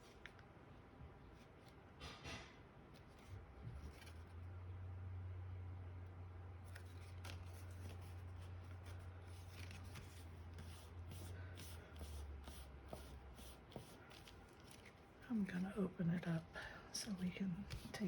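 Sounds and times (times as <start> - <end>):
low steady hum: 0.0 - 18.0
cardstock rustling and tapping: 17.6 - 18.0.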